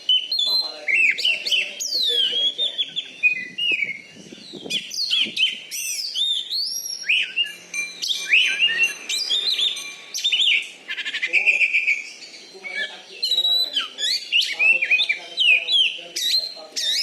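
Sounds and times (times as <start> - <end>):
bird singing whistled song: 0.0 - 17.0.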